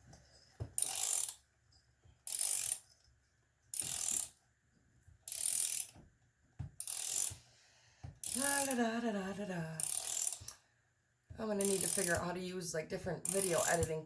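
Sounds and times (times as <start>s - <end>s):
ratchet wrench clicking: 0.8s - 1.4s, 2.3s - 2.9s, 3.7s - 4.4s, 5.3s - 6.0s, 6.8s - 7.4s, 8.2s - 8.7s, 9.8s - 10.6s, 11.6s - 12.2s, 13.3s - 13.9s.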